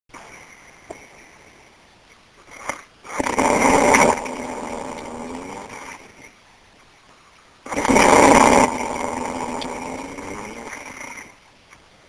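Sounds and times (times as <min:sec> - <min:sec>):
loud rough snore: 0:02.5 - 0:06.1, 0:07.7 - 0:11.4.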